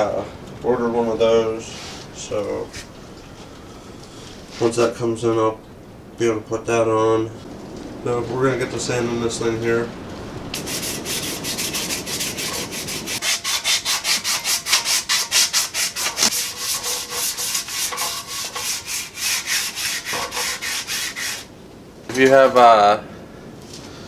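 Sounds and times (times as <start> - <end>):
sandpaper rubbing on metal: 10.6 - 21.5.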